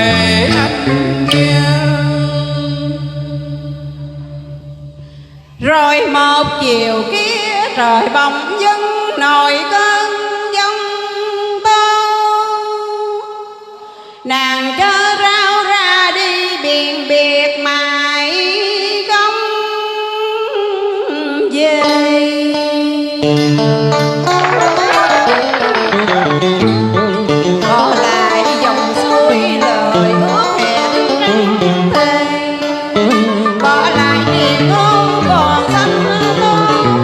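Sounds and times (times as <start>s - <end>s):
musical accompaniment: 0.0s - 5.4s, 21.8s - 37.0s
person singing long wavering notes: 0.0s - 5.8s, 24.2s - 37.0s.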